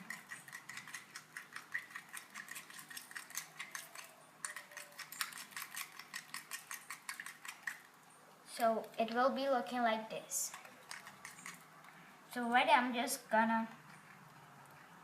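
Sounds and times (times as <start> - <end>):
straw tapping and scraping bowl: 0.0 - 7.9, 10.4 - 11.7.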